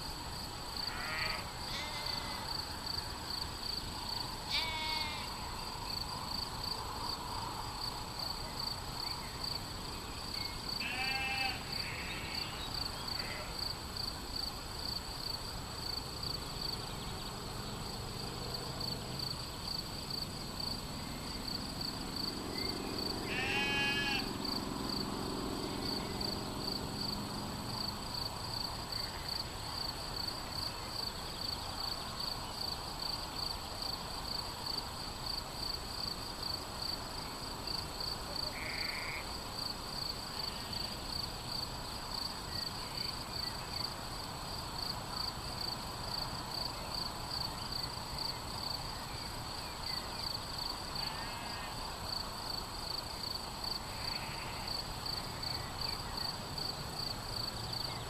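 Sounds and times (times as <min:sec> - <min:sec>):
sheep bleating: 0:00.9 - 0:02.5, 0:04.5 - 0:05.3, 0:10.8 - 0:12.4, 0:23.2 - 0:24.3, 0:38.5 - 0:39.2, 0:51.0 - 0:51.8, 0:53.9 - 0:54.7.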